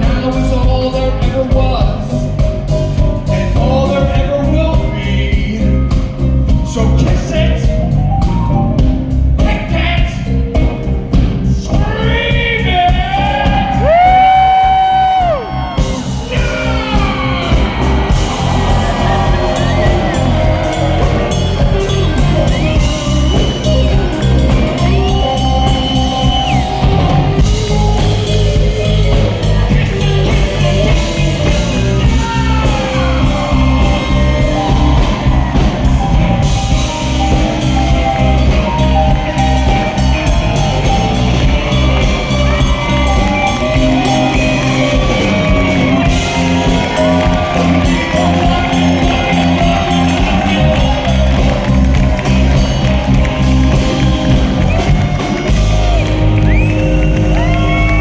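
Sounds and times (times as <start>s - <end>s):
drum kit beat: 0.0s - 58.0s
electric guitars: 13.5s - 58.0s.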